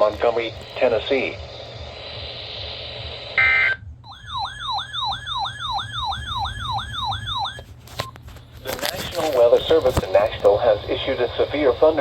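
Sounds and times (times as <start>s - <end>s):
radio hiss: 0.0s - 3.8s, 8.6s - 12.0s.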